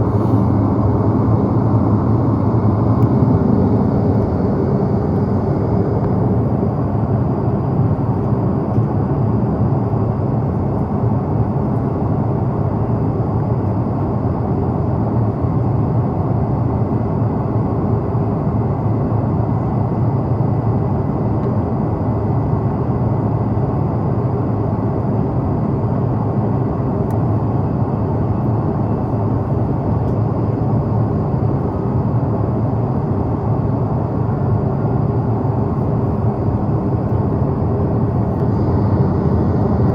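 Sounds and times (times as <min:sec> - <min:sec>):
airliner cabin engine rumble: 0:00.0 - 0:39.9.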